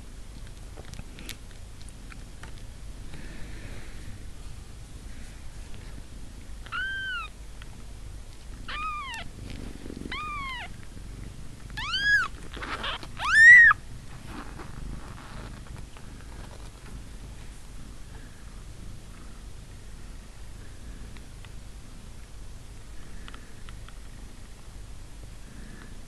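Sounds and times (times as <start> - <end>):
kittens mewing: 6.7 - 7.3, 8.6 - 9.4, 10.0 - 10.7, 11.7 - 13.8.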